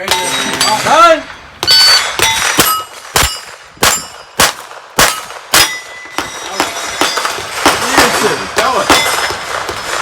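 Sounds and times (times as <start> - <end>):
steel plate target ringing: 0.0 - 4.4, 5.0 - 10.0
pistol shots: 1.6 - 10.0.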